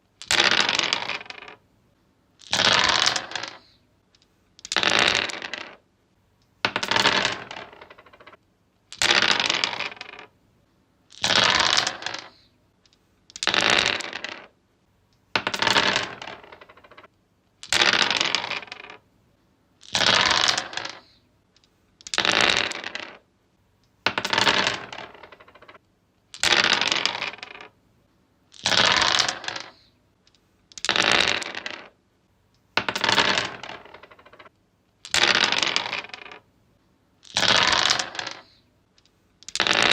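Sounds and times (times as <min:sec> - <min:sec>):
dice clattering on wood: 0:00.2 - 0:01.6, 0:02.4 - 0:05.8, 0:06.6 - 0:10.3, 0:11.1 - 0:14.6, 0:15.3 - 0:19.0, 0:19.8 - 0:23.3, 0:24.0 - 0:27.8, 0:28.5 - 0:32.0, 0:32.7 - 0:36.5, 0:37.2 - 0:39.9.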